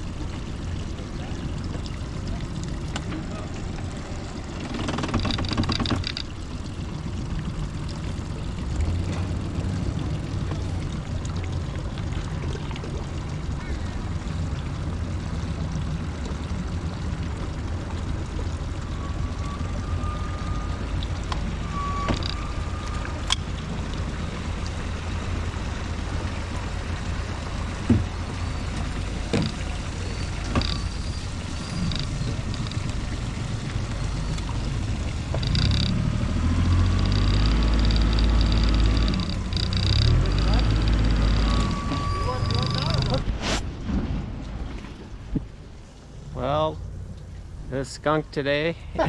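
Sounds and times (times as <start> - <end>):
boat engine low rumble: 0.0 - 49.0
short high chirps: 41.4 - 43.2.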